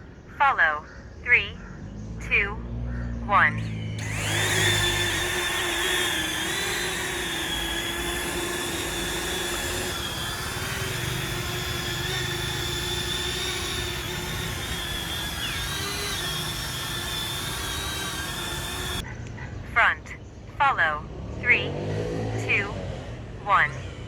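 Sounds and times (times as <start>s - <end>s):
drone propellers whining: 3.6s - 19.0s.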